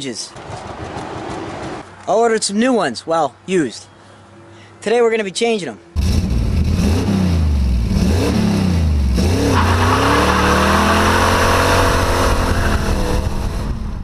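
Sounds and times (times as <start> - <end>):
car engine revving: 6.0 - 14.0.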